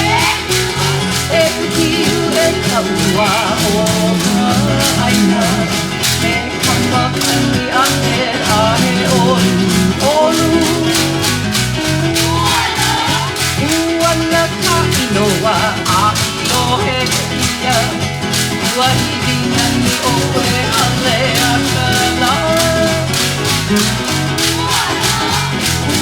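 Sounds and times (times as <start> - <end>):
person singing: 0.0 - 26.0
steady beat: 0.0 - 26.0
strummed guitar: 0.0 - 26.0.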